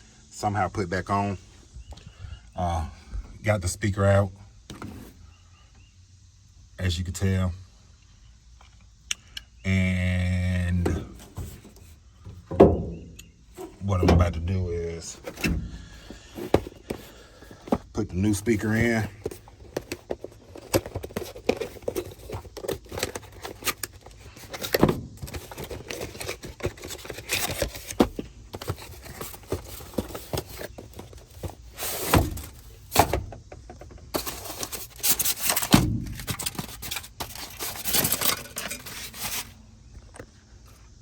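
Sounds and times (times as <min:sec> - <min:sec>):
parts and tools clunking: 0:10.8 - 0:40.4.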